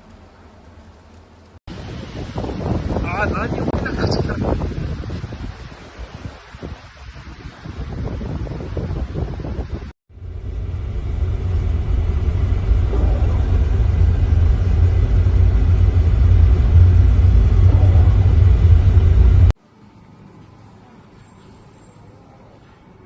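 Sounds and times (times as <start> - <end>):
loud low rumble: 10.1 - 19.6.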